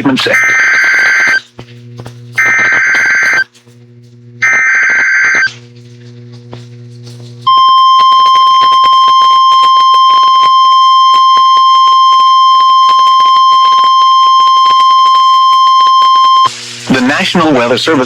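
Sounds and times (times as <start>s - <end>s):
crackling static: 0.0s - 1.5s, 2.3s - 3.5s, 4.4s - 5.6s, 7.4s - 18.0s
high-pitched alarm tone: 0.2s - 1.4s, 2.4s - 3.5s, 4.4s - 5.6s, 7.5s - 16.5s.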